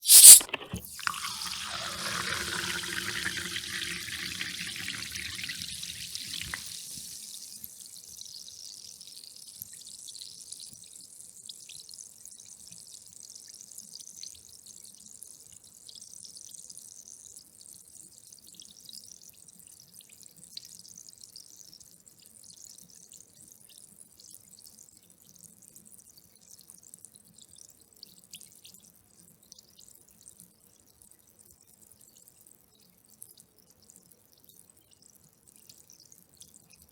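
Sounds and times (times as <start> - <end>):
bubbles fizzing and crackling: 0.0 - 7.7
carbonated water hiss: 0.0 - 7.7
water pouring into a glass: 0.0 - 7.7.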